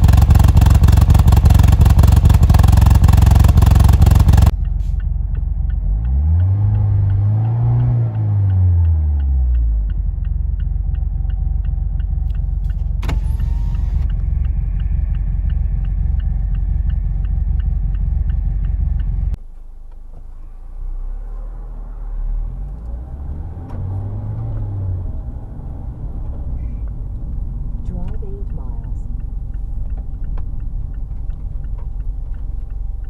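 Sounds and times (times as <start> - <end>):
car engine idling rough: 0.0 - 6.9, 9.5 - 20.4
engine ticking: 0.0 - 20.1, 25.1 - 33.0.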